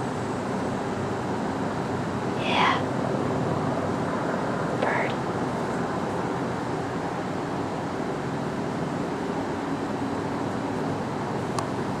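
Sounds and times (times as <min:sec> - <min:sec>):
outdoor background hiss: 0:00.0 - 0:12.0.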